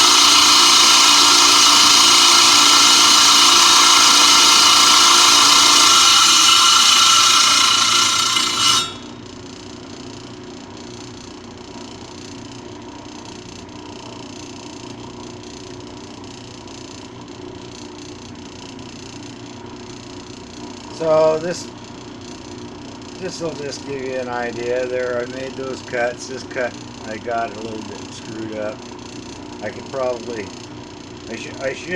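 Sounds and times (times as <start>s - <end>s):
saw blade grinding through rock: 0.0s - 9.1s
saw running quietly: 0.0s - 9.1s.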